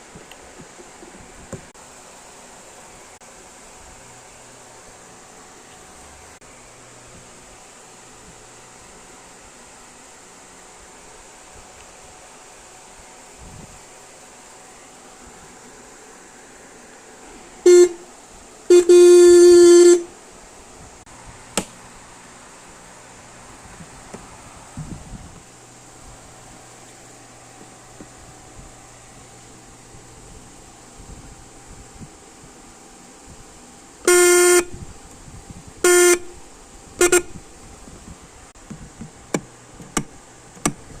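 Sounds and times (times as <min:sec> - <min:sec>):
car horn honking: 0:17.7 - 0:18.0, 0:18.7 - 0:20.1, 0:34.1 - 0:34.8, 0:35.8 - 0:36.4, 0:37.0 - 0:37.4.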